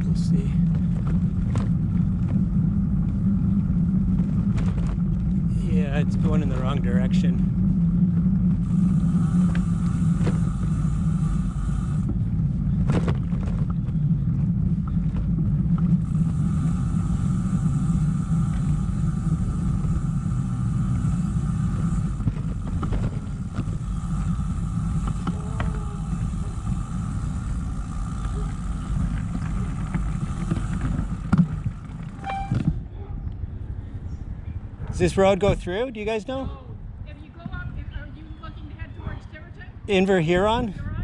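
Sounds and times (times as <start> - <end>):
bike rolling over rough trail: 0.0 - 32.3
bike knocks and rattles: 4.0 - 5.4, 8.6 - 32.3.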